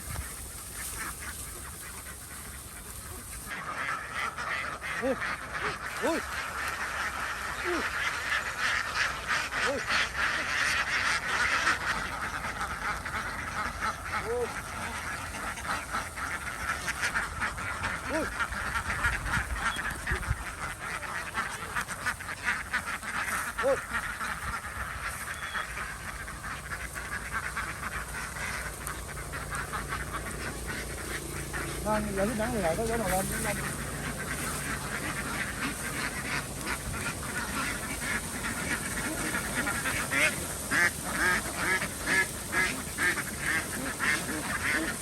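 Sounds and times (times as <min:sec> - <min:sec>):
ducks quacking: 0:00.0 - 0:45.0.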